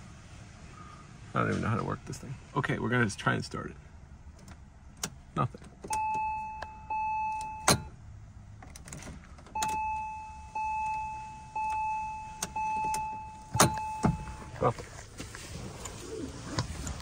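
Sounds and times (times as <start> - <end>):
ignition key clicks: 4.3 - 7.9, 8.6 - 10.1, 10.7 - 14.4
dashboard warning chime: 5.9 - 8.0, 9.5 - 14.8.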